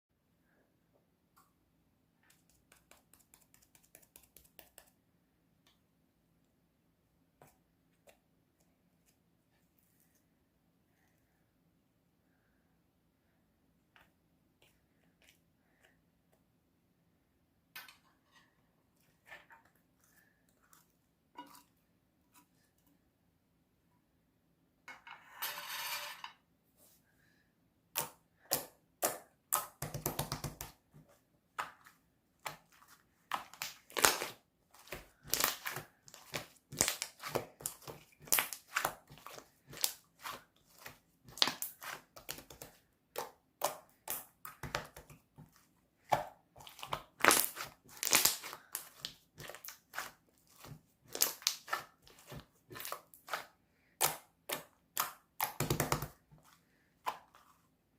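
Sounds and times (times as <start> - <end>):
slime crackling and popping: 33.3 - 40.4, 41.3 - 42.6, 46.6 - 53.4.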